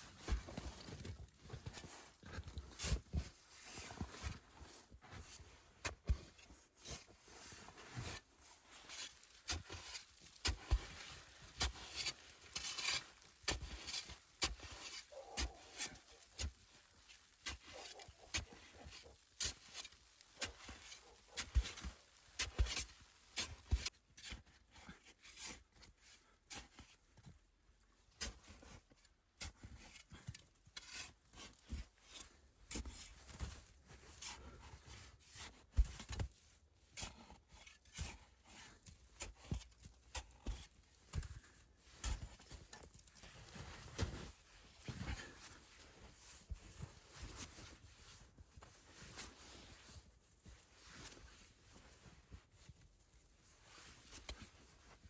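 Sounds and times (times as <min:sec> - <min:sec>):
scraping and crunching in snow: 0:00.0 - 0:26.0, 0:36.9 - 0:55.0.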